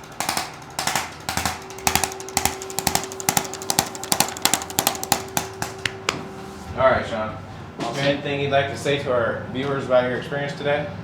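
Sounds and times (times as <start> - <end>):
sharp knocks or taps: 0.0 - 6.3.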